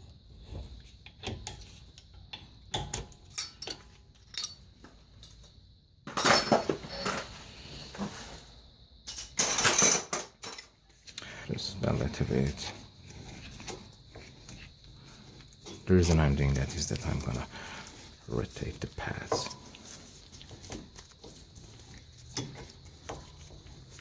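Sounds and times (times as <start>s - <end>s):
metal tools clinking on brake: 3.3s - 5.4s
rattling and scraping: 11.8s - 24.0s.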